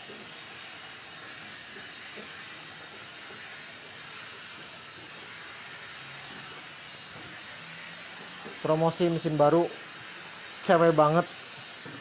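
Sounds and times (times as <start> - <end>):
faint hiss: 5.2 - 6.6.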